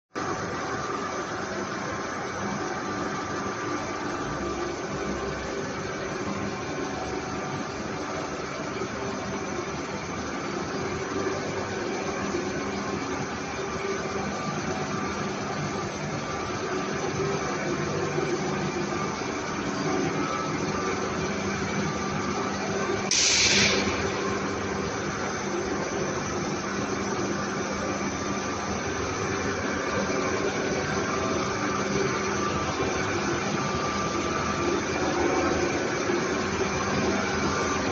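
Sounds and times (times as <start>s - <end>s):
industrial machinery humming: 0.2s - 37.9s
loud hiss: 23.1s - 24.0s.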